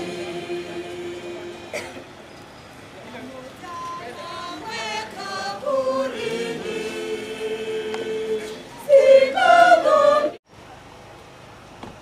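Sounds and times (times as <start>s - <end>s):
choir singing: 0.0s - 1.9s, 3.9s - 10.4s.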